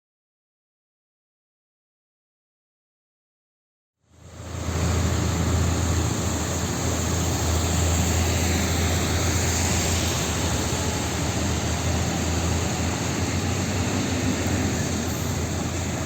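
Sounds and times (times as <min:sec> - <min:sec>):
traffic engine drone: 0:04.1 - 0:16.0
rain hissing on wet road: 0:04.2 - 0:16.0.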